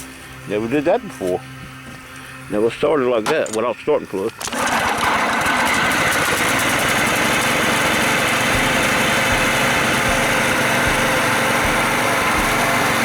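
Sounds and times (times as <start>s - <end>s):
small gasoline engine running: 4.4s - 13.0s.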